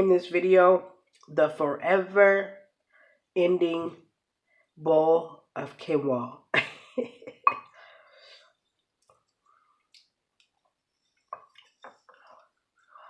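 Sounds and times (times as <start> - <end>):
wet mouth clicks: 9.0 - 12.5.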